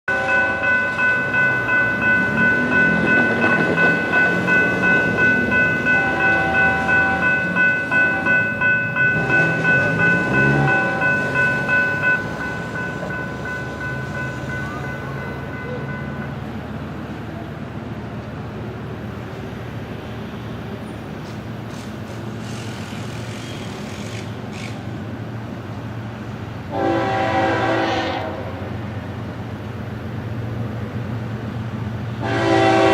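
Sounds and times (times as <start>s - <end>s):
crossing warning bell ringing: 0.1s - 17.4s, 26.7s - 29.0s, 32.1s - 32.9s
freight train rumbling past: 0.1s - 32.9s.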